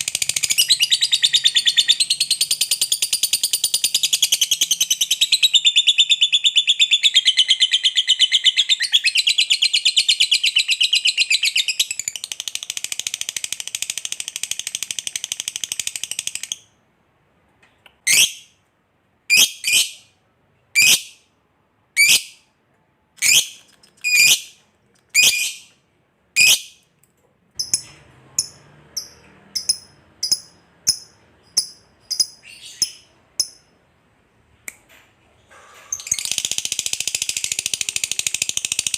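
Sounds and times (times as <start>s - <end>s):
lovebird sharp chirps: 0.0s - 16.8s, 19.3s - 20.1s, 20.8s - 21.2s, 23.2s - 25.7s, 26.4s - 26.8s, 27.6s - 33.7s
lovebird chattering trill: 27.6s - 33.6s.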